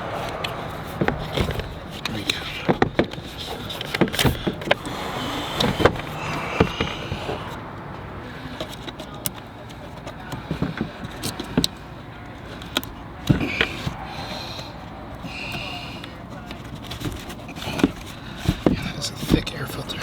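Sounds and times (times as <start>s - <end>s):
hands handling plastic housing: 0.0s - 20.0s.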